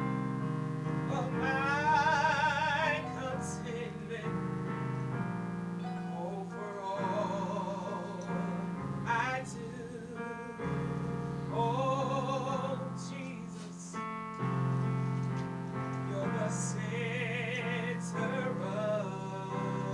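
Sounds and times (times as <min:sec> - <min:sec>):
sustained keyboard chords: 0:00.0 - 0:19.9
woman singing gospel: 0:01.1 - 0:04.4, 0:06.1 - 0:14.0, 0:16.1 - 0:19.9.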